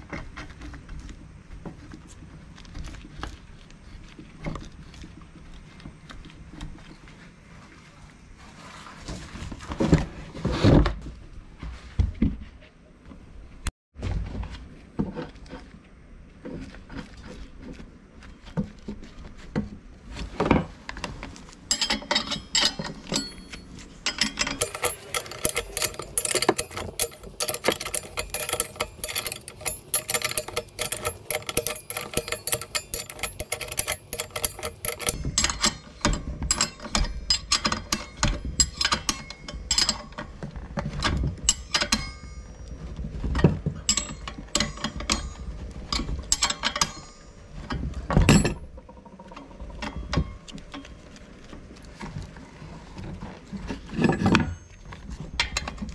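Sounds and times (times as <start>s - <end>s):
metal tools clicking and clinking: 21.7s - 51.0s.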